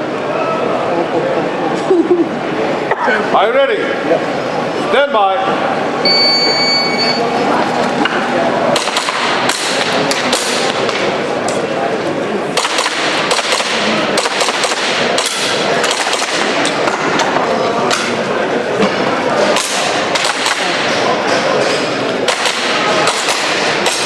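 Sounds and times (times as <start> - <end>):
crowd chatter in a large hall: 0.0 - 24.0
airsoft pistol shots: 8.8 - 10.7, 12.6 - 16.6, 22.3 - 24.0.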